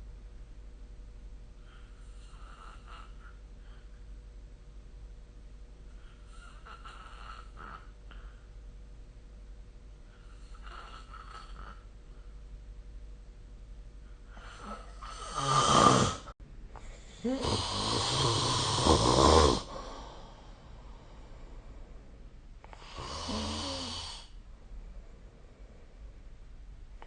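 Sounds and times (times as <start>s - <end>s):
person snoring: 14.4s - 16.3s, 17.0s - 20.5s, 22.7s - 24.4s.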